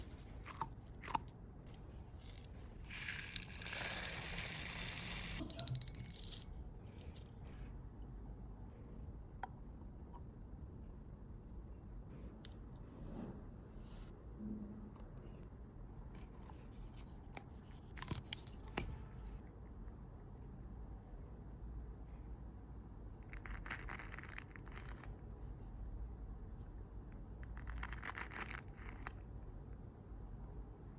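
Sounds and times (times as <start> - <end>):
low steady hum: 0.0 - 23.4
crinkly hiss of stress toy: 2.2 - 5.4.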